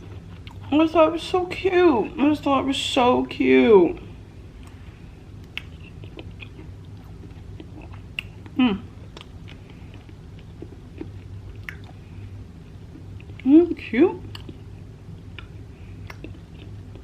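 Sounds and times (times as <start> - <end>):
chewing soft cookie: 0.0 - 1.6, 4.0 - 13.5, 14.2 - 17.0
wet mouth clicks: 11.0 - 12.0.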